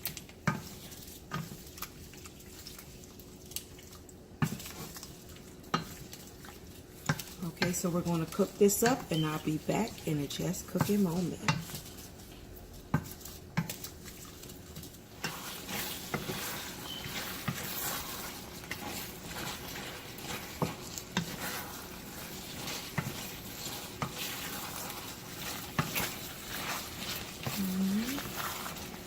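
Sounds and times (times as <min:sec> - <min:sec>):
sauce sizzling and bubbling: 0:00.0 - 0:29.0
utensil clicking against pan: 0:07.0 - 0:09.2, 0:15.2 - 0:27.6.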